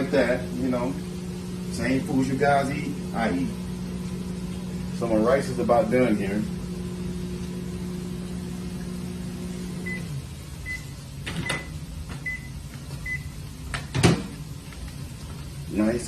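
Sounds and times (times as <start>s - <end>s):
microwave oven humming: 0.0s - 16.0s
microwave beeps: 9.1s - 13.4s.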